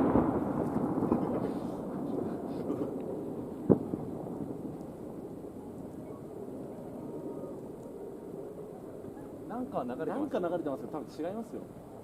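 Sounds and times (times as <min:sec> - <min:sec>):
sharp firework bang: 0:00.0 - 0:04.6
fireworks bursting: 0:00.0 - 0:09.5.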